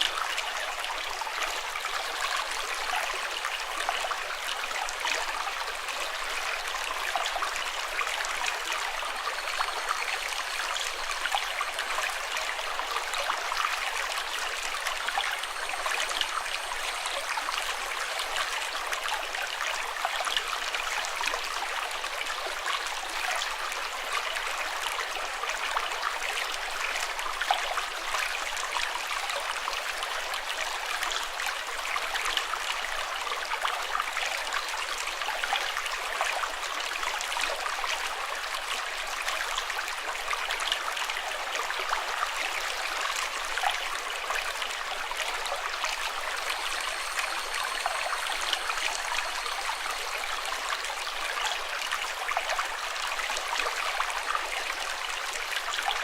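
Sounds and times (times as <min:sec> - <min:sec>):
running water splashing: 0:44.8 - 0:52.3.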